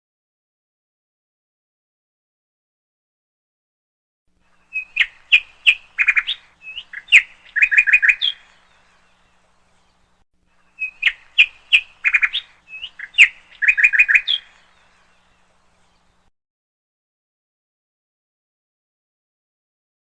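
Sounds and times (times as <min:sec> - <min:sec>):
bird chirps and trills: 0:04.4 - 0:16.3.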